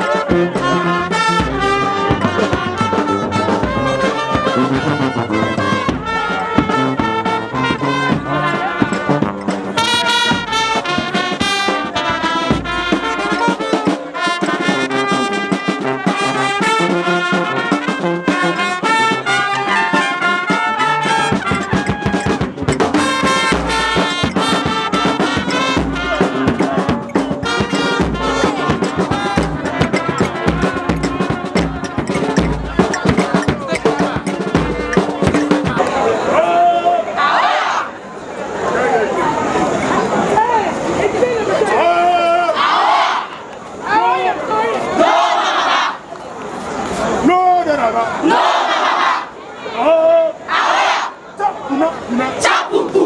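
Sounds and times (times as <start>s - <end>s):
brass band playing: 0.0s - 36.3s
sharp percussive beat: 0.0s - 36.3s
low bass notes: 28.0s - 36.0s.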